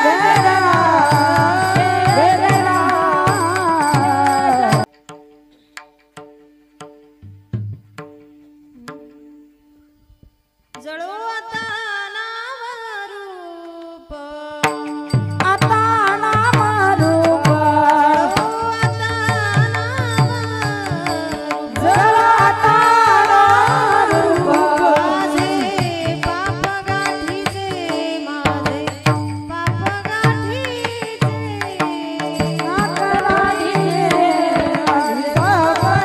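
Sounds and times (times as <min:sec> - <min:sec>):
hand drum beat: 0:00.0 - 0:04.9, 0:14.7 - 0:36.0
woman singing: 0:00.0 - 0:04.9, 0:10.8 - 0:36.0
harmonium: 0:00.0 - 0:36.0.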